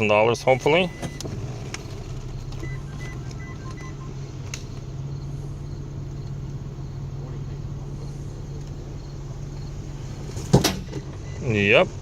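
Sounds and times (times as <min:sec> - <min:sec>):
short electronic beeps: 0:00.4 - 0:01.2, 0:02.6 - 0:04.3
seat motor humming: 0:00.4 - 0:11.7.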